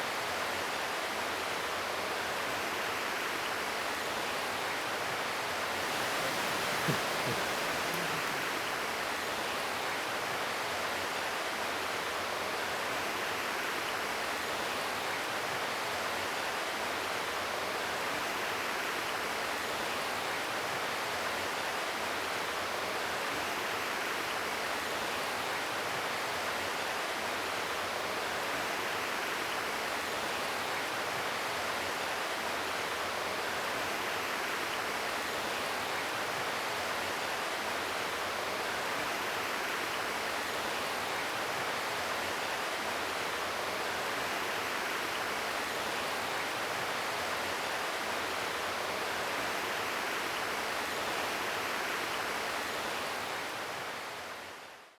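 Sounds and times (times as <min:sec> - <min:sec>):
flowing water rushing: 0:05.7 - 0:09.2.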